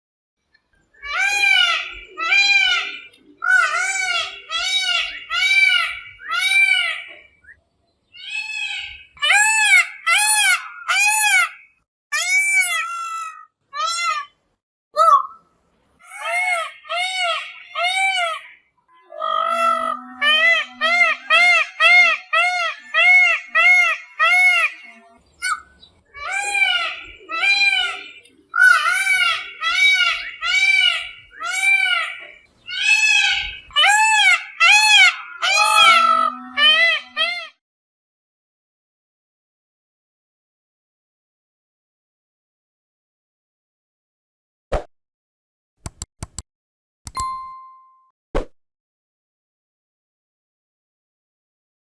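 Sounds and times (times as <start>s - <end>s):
peacock calling: 1.0s - 14.2s, 16.0s - 37.5s.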